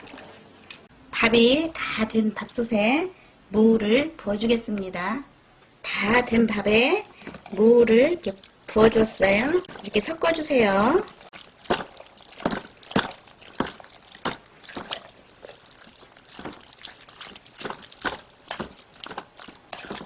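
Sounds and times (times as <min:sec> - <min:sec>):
wet squishes of stirring rice: 0:00.0 - 0:00.9, 0:06.0 - 0:20.0.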